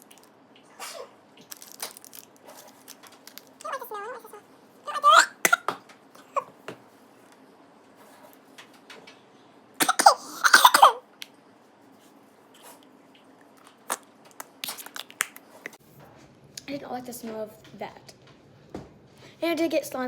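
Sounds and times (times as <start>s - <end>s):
girl coughing: 3.7s - 6.5s, 9.8s - 11.0s.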